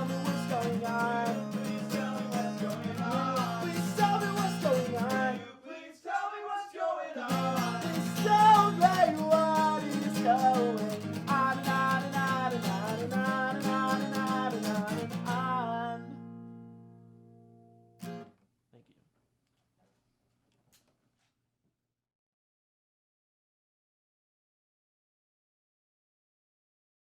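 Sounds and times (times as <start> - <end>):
strummed acoustic guitar: 0.0 - 5.5, 7.3 - 18.3
man singing: 0.0 - 16.3.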